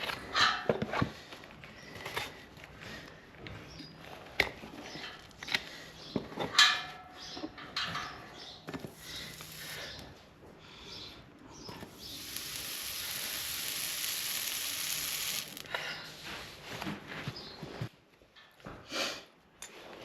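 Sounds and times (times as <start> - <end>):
steady hiss: 8.9 - 10.1, 11.8 - 15.7.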